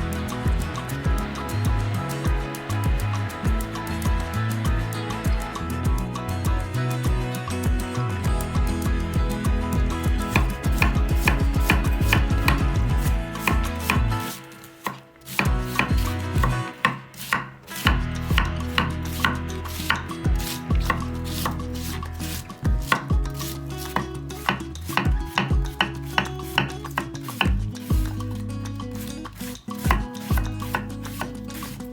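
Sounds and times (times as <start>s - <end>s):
knife chopping on cutting board: 10.3s - 21.6s, 22.3s - 28.1s, 29.8s - 31.8s.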